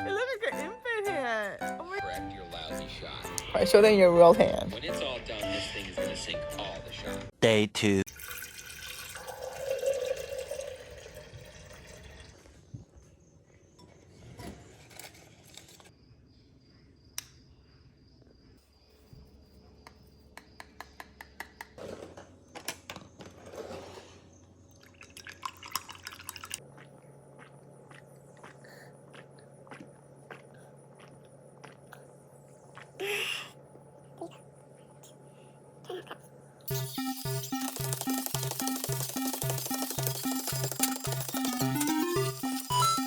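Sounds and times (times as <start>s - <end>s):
liquid being poured: 8.1s - 12.6s, 24.8s - 28.0s, 36.7s - 43.0s
dishes and utensils clinking: 36.7s - 43.0s.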